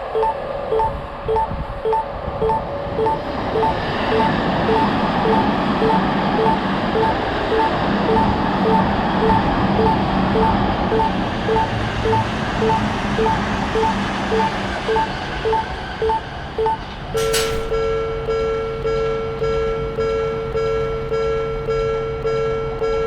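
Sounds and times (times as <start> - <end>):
level crossing bell dinging: 0.0 - 16.8
train wheels rumbling on rails: 2.4 - 17.8.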